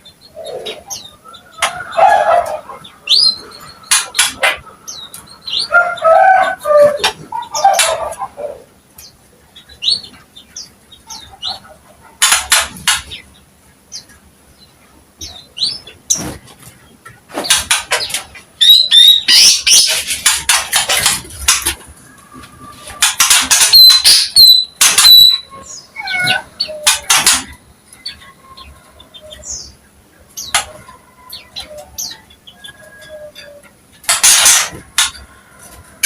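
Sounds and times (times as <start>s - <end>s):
soft bird calls: 0.0s - 36.0s
bird chattering and whistling: 17.9s - 20.6s, 22.8s - 29.8s.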